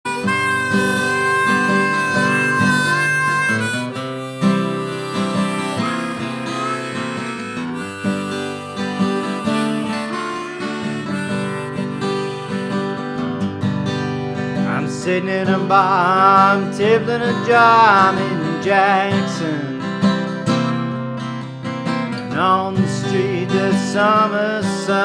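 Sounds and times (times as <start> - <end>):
harmonica playing: 0.0 - 19.1
acoustic guitar strumming: 0.0 - 25.0.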